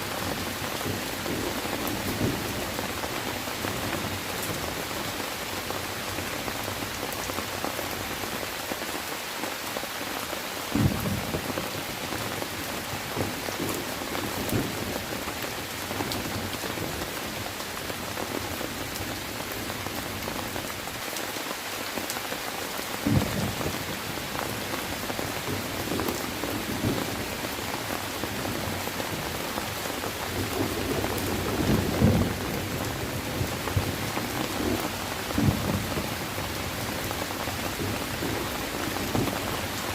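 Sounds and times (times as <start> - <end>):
steady rain: 0.0 - 39.9
thunder rumbles: 10.7 - 12.4, 23.0 - 29.4, 30.2 - 39.6.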